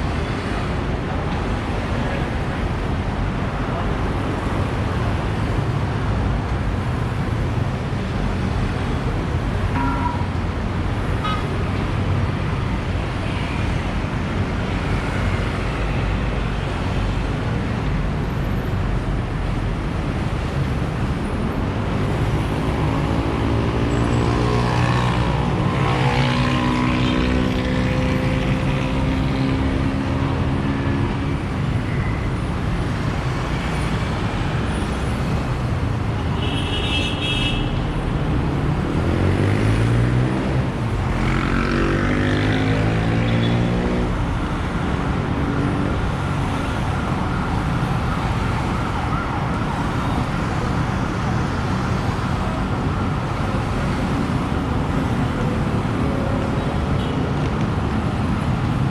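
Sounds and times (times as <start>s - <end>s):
road traffic rumbling: 0.0s - 58.9s.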